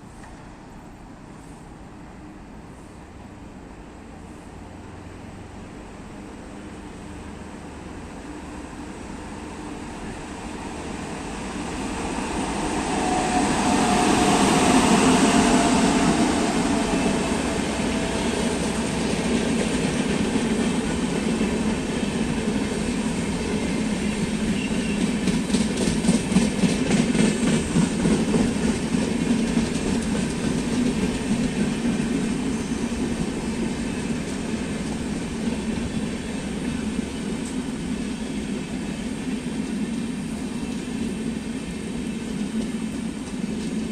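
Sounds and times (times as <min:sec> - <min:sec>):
train rolling rumble: 0:00.0 - 0:43.9.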